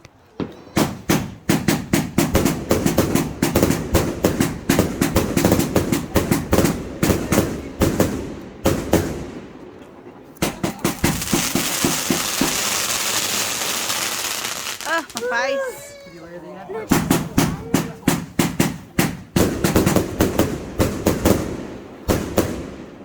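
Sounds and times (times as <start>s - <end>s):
fireworks banging: 0.3s - 16.0s, 16.8s - 23.0s
steady hiss: 10.4s - 15.5s.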